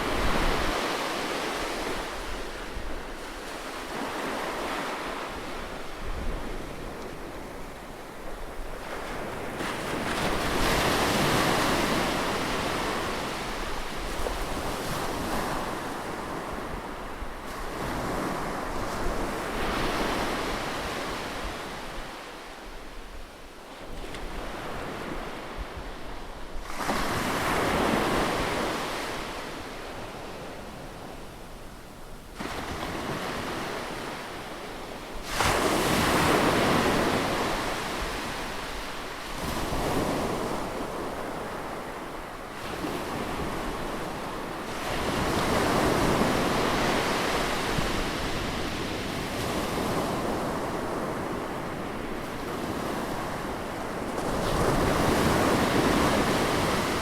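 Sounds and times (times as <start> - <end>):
waves breaking on beach: 0.0 - 23.0, 32.2 - 57.0.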